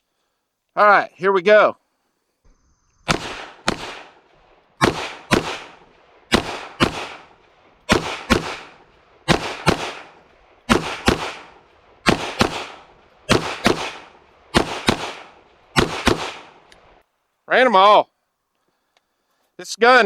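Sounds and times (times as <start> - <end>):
pistol shots with echo: 3.1 - 16.7.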